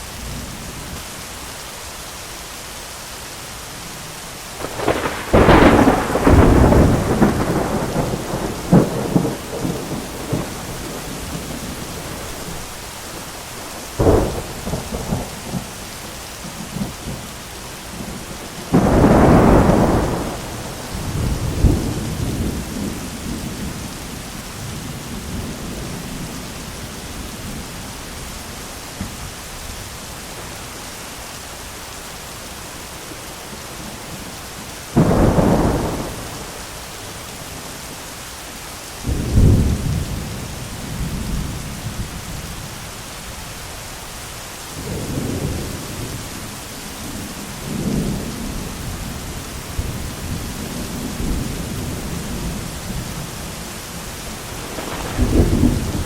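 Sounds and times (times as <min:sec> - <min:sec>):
heavy rain: 0:00.0 - 0:56.0
sharp thunder crack: 0:04.6 - 0:12.6, 0:18.7 - 0:23.0, 0:54.5 - 0:56.0
thunder rumbling: 0:04.6 - 0:13.0, 0:13.6 - 0:28.0, 0:34.9 - 0:37.2, 0:39.0 - 0:42.7, 0:44.8 - 0:56.0.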